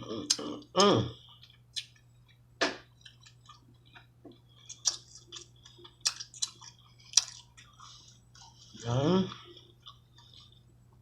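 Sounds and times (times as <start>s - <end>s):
wet chewing: 1.2s - 11.0s
lip smacks and clicks: 3.0s - 7.5s.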